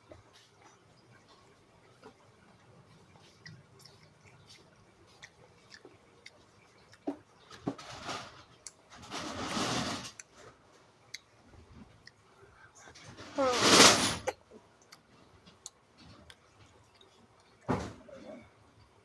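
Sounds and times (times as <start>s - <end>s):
mouth clicks while eating: 3.1s - 7.3s, 8.6s - 8.9s, 11.1s - 11.4s, 12.0s - 12.2s
rustling noise: 7.6s - 10.9s, 13.0s - 14.3s.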